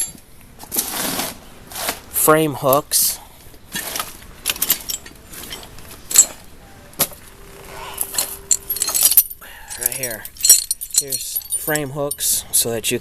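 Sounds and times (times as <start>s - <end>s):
metal hooks and chains clinking: 0.0s - 0.2s, 3.8s - 7.1s, 7.9s - 12.7s.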